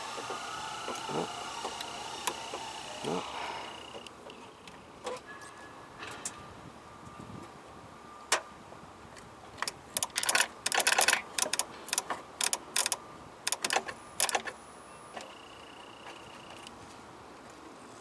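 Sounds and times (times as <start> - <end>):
metal clamps clicking and scraping: 10.0 - 14.5.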